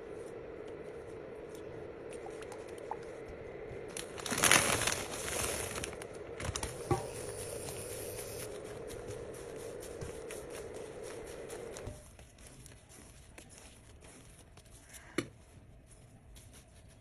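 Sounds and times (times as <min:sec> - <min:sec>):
faint hum: 0:00.0 - 0:17.0
packaging crinkling: 0:03.8 - 0:15.1.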